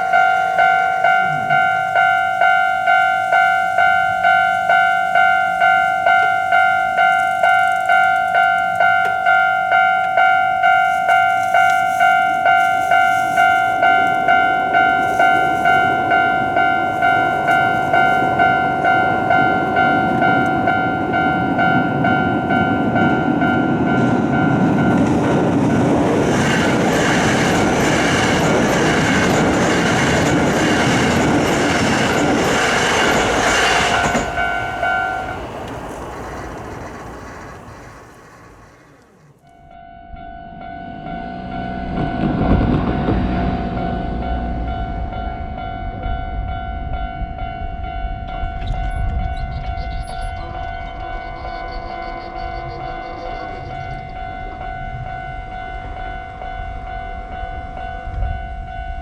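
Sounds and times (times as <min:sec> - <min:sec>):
train wheels clattering on rails: 0:00.0 - 0:39.5
level-crossing alarm bell ringing: 0:00.0 - 0:59.0.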